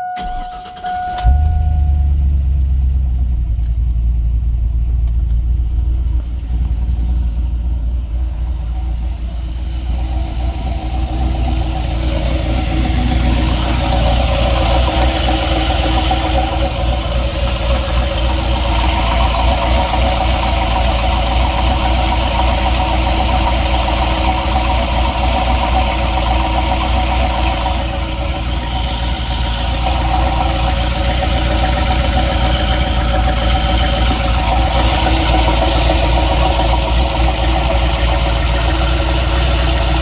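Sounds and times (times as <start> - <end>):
engine idling with knocking: 0.0 - 40.0.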